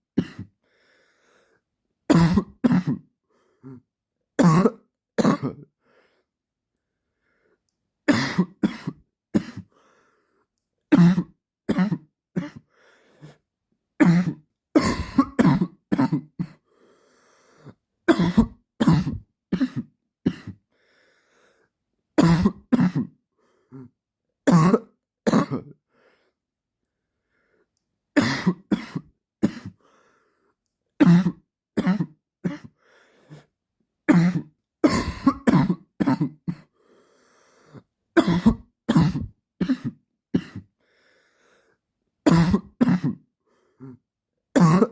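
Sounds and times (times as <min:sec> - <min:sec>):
man dry coughing: 0:00.2 - 0:00.5, 0:02.1 - 0:03.1, 0:04.4 - 0:05.7, 0:08.1 - 0:09.7, 0:11.0 - 0:12.6, 0:14.0 - 0:16.6, 0:18.1 - 0:20.6, 0:22.2 - 0:23.2, 0:24.5 - 0:25.8, 0:28.2 - 0:29.8, 0:31.0 - 0:32.7, 0:34.1 - 0:36.7, 0:38.2 - 0:40.7, 0:42.3 - 0:43.2, 0:44.6 - 0:44.9.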